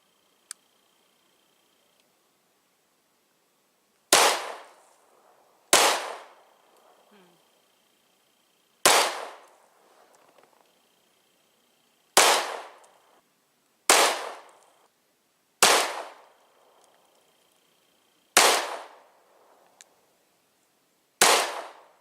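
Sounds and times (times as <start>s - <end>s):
pistol shots with echo: 4.1s - 4.7s, 5.7s - 6.4s, 8.8s - 9.5s, 12.2s - 12.9s, 13.9s - 14.6s, 15.6s - 16.3s, 18.4s - 19.0s, 21.2s - 22.0s.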